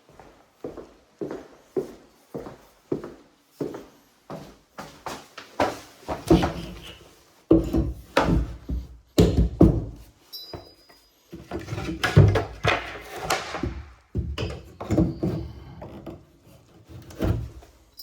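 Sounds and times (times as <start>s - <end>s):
knocks and thuds on wood: 7.5s - 10.0s.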